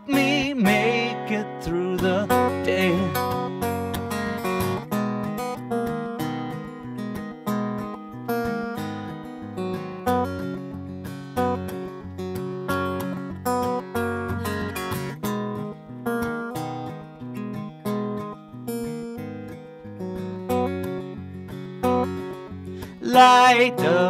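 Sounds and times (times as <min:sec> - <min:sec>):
acoustic guitar strumming chords: 0:00.0 - 0:24.0.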